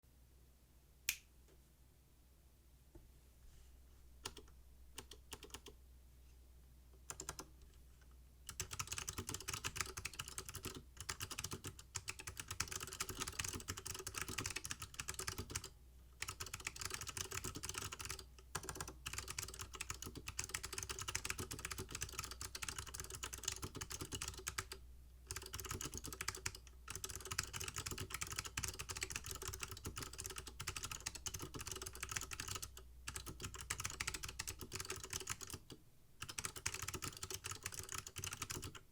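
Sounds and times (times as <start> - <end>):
mechanical keyboard typing: 4.2 - 5.7, 7.1 - 7.5, 8.5 - 38.9.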